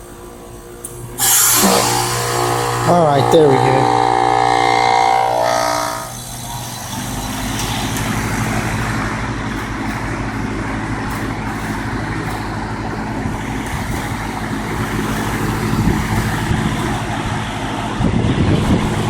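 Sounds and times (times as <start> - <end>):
fan hum with air noise: 0.0 - 19.0
heat pump whine: 0.0 - 19.0.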